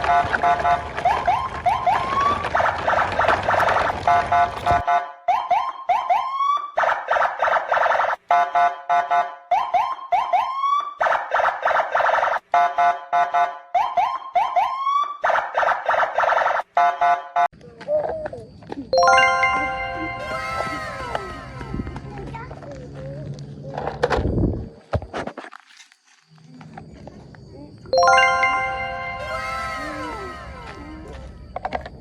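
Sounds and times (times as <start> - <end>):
electronic siren whoops and pulsing tone: 4.8 - 8.2, 9.5 - 11.0, 13.7 - 15.2, 28.0 - 31.0.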